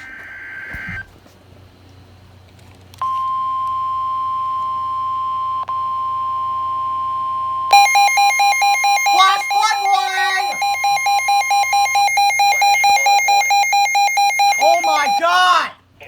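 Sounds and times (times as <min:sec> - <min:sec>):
buzzy data burst: 0:07.7 - 0:15.3
steady alert tone: 0:07.7 - 0:15.3
warbling multi-tone: 0:07.8 - 0:15.2.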